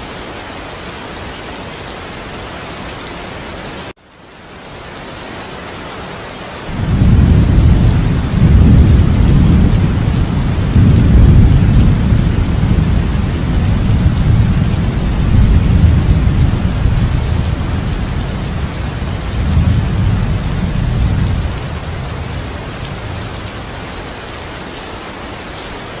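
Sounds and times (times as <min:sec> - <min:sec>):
heavy rain: 0:00.0 - 0:26.0
thunder rumbling: 0:06.7 - 0:24.1.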